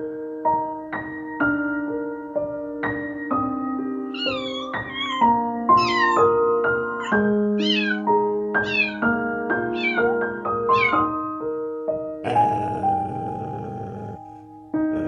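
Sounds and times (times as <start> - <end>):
piano music: 0.0 - 15.0
kitten mewing: 4.2 - 6.4, 7.0 - 9.1, 9.7 - 11.1, 12.3 - 14.3.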